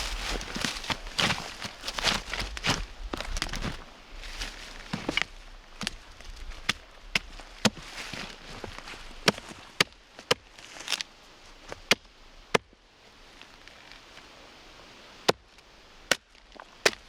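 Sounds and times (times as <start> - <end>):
axe chopping log: 6.6 - 7.9, 9.2 - 11.0, 16.1 - 17.0.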